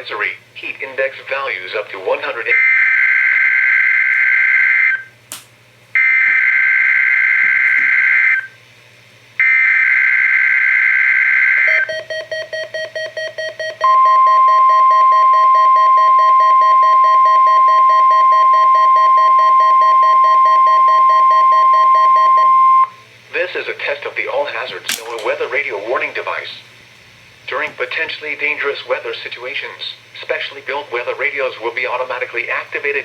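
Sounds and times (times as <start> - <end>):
steady warning alarm tone: 2.5 - 5.1, 6.0 - 8.6, 9.4 - 23.0.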